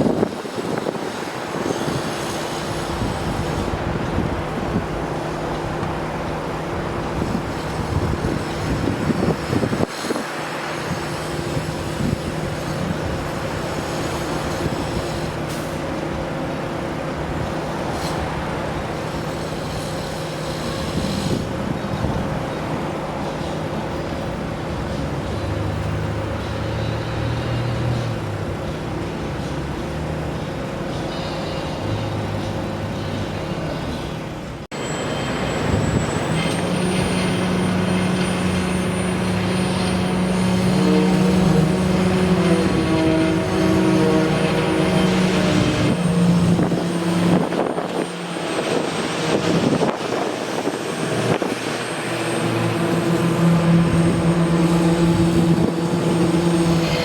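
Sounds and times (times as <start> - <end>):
vehicles passing: 0.0 - 57.0
engine hum: 31.9 - 57.0.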